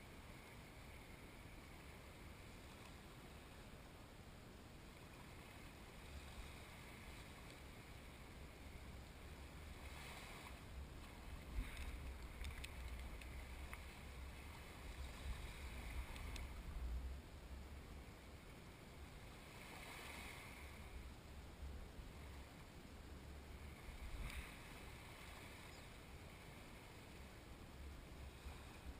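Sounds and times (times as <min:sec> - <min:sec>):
faint clicks: 0:11.0 - 0:14.1, 0:15.6 - 0:16.6, 0:24.2 - 0:24.5.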